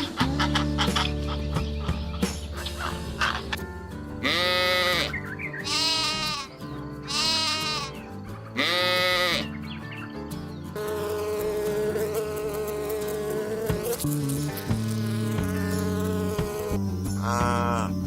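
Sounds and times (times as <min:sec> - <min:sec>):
background music: 0:00.0 - 0:18.0
sheep bleating: 0:04.2 - 0:09.5.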